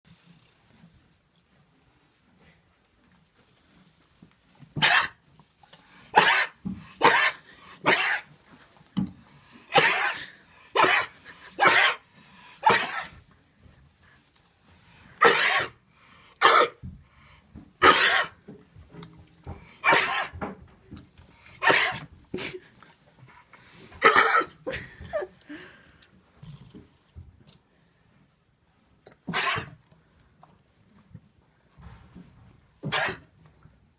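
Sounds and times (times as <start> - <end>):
sheep sneezing: 4.8 - 5.2, 6.1 - 8.3, 9.7 - 13.2, 15.2 - 15.8, 16.4 - 16.8, 17.8 - 18.4, 19.8 - 20.4, 21.6 - 22.1, 24.0 - 24.6, 29.3 - 29.8, 32.8 - 33.3.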